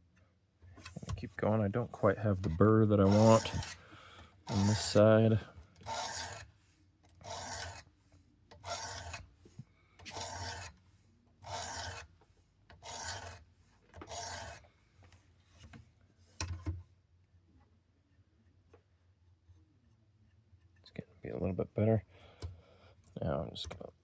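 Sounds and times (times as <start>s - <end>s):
sharpening stone rasping on blade: 3.0s - 3.8s, 5.8s - 6.5s, 7.2s - 7.8s, 8.6s - 9.2s, 10.1s - 10.8s, 11.4s - 12.1s, 12.8s - 13.4s, 14.1s - 14.6s.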